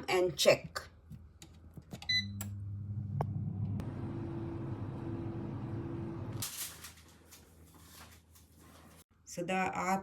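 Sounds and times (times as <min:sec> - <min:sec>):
air fryer humming: 0:02.1 - 0:06.5.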